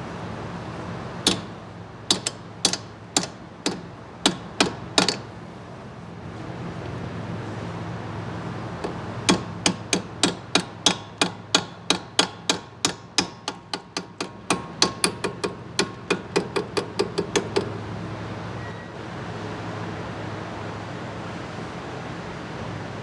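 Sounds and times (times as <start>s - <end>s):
steady low hum: 0.0s - 23.0s
hammer striking metal: 1.2s - 5.3s, 8.8s - 17.8s.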